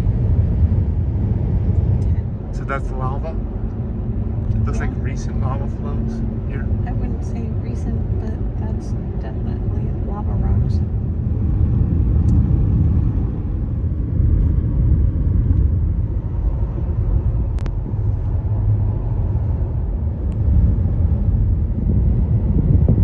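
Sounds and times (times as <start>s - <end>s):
car tyres and engine rumbling: 0.0s - 23.0s.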